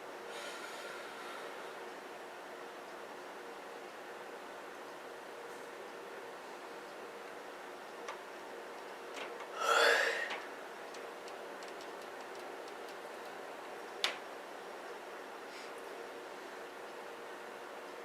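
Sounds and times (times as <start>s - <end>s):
low hum and hiss: 0.0s - 18.0s
woman yawning: 9.6s - 10.3s.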